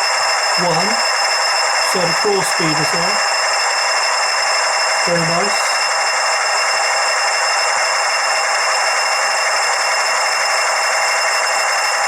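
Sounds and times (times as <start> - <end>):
diesel engine sound from small speaker: 0.5 - 3.4, 4.9 - 6.1.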